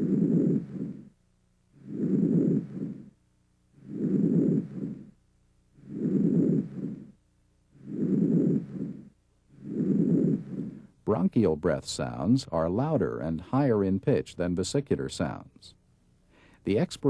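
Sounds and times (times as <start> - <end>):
breathing through a stethoscope: 16.2 - 16.7.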